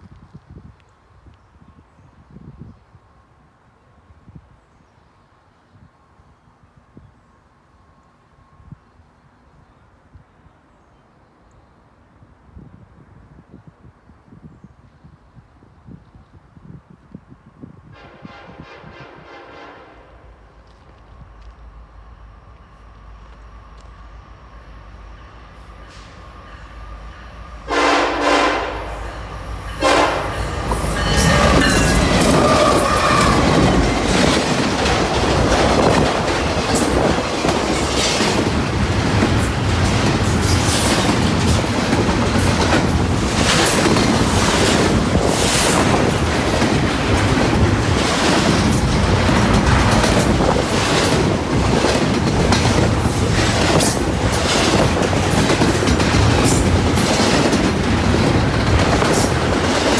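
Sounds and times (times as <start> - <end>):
locomotive horn blasts: 18.0 - 20.4, 27.7 - 33.9
train wheels clicking over joints: 25.6 - 59.9.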